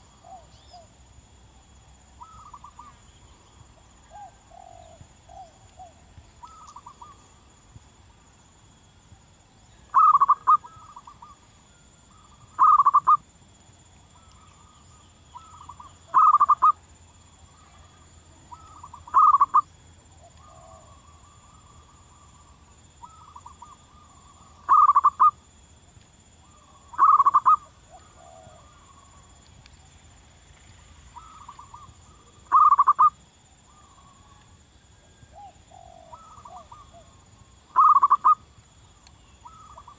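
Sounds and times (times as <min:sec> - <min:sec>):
dove cooing: 0:04.1 - 0:07.2, 0:09.9 - 0:11.4, 0:12.5 - 0:13.2, 0:15.4 - 0:16.7, 0:18.5 - 0:19.6, 0:23.0 - 0:25.3, 0:26.5 - 0:29.0, 0:31.2 - 0:33.1, 0:35.1 - 0:38.4.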